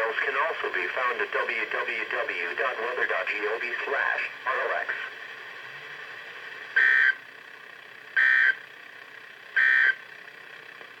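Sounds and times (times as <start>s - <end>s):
faint radio hiss: 0.0s - 6.8s
harsh two-tone digital buzzes: 6.8s - 7.2s, 8.2s - 8.6s, 9.6s - 10.0s.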